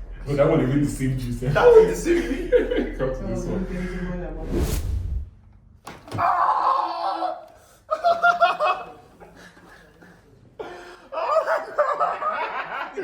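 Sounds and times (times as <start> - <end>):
people laughing: 1.4 - 4.2, 7.9 - 13.0.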